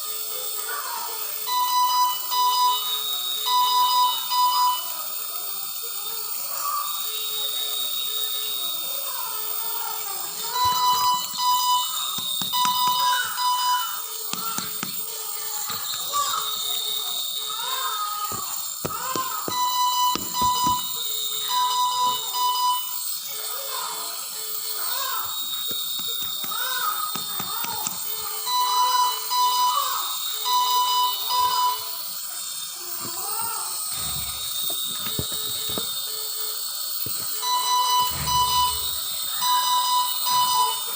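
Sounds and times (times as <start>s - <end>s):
electronic alarm beeping: 1.4s - 5.2s, 10.2s - 17.5s, 18.3s - 23.3s, 24.7s - 32.7s, 33.7s - 40.9s.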